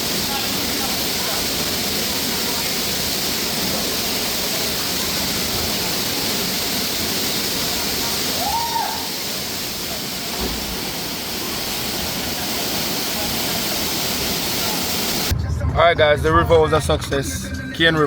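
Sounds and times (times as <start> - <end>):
river water rushing: 0.0 - 15.3.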